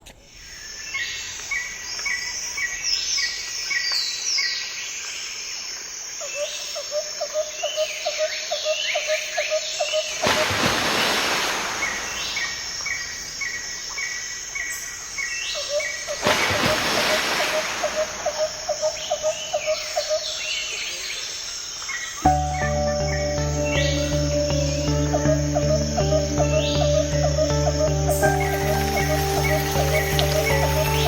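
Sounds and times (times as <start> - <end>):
birds calling and singing: 7.6 - 31.0.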